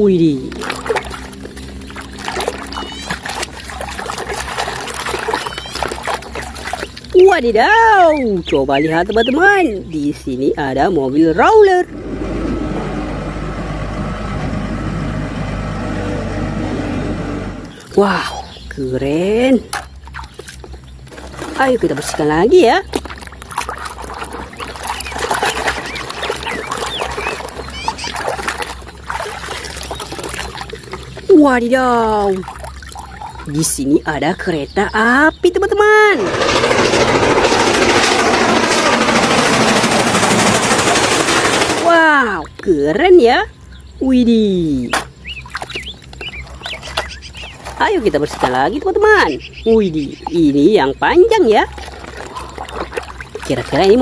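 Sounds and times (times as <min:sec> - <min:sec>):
water trickling and splashing: 0:00.0 - 0:10.0, 0:17.6 - 0:36.1, 0:41.8 - 0:54.0.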